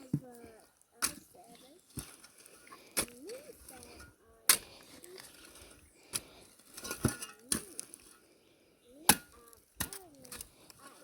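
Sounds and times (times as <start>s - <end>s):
tool knocking and scraping soil: 0.0s - 8.2s.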